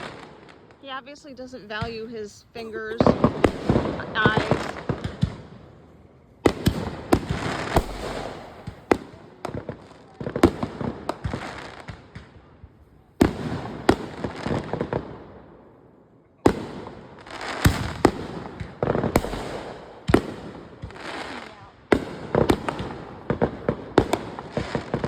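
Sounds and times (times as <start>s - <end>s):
firework crackling: 0.0s - 5.7s, 6.4s - 12.5s, 13.2s - 15.2s, 16.5s - 25.0s
firework bangs: 0.0s - 15.8s, 16.4s - 25.0s.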